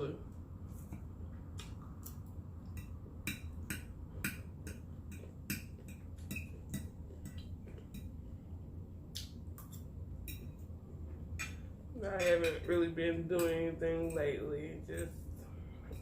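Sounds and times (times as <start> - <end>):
chewing and mouth smacking: 0.8 - 3.1.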